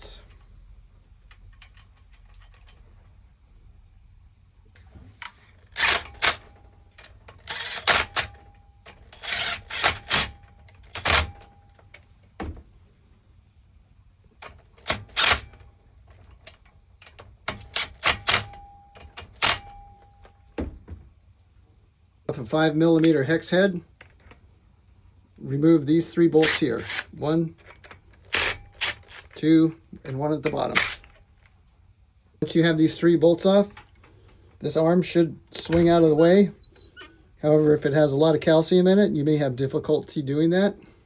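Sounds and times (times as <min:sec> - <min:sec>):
metallic clicking of hand tools: 0:16.2 - 0:19.9, 0:26.4 - 0:29.4
faint ringing tone: 0:18.2 - 0:20.6.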